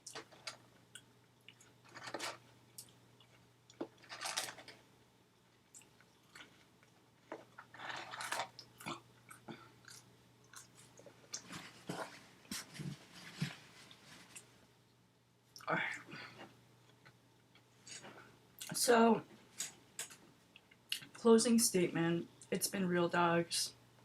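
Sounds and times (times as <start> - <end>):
person chewing crunchy food: 5.6 - 12.1.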